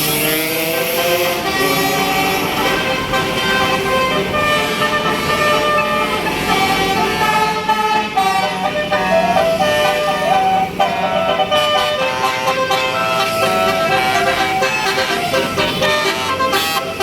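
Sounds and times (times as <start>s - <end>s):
multi-tone air horn melody: 0.0s - 17.0s.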